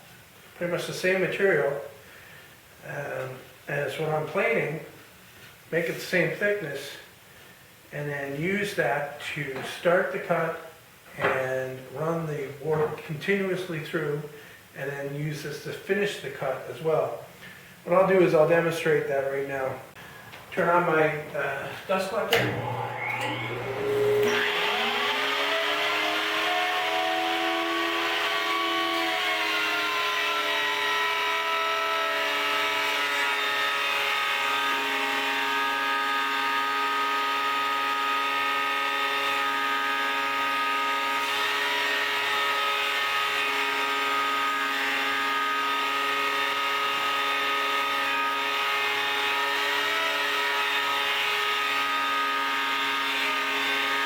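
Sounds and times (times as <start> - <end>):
dust collector and planer whine: 22.0 - 54.0.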